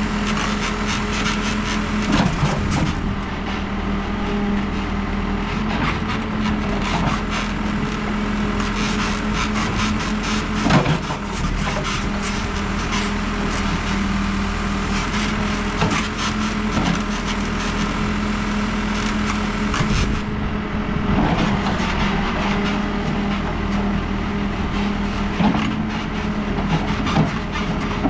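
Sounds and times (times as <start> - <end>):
diesel engine running under load: 0.0 - 28.0.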